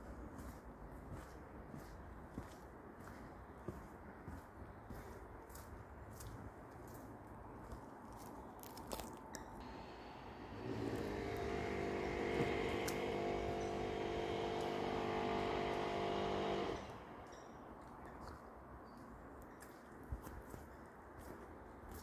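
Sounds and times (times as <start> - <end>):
engine drone: 9.6 - 17.6.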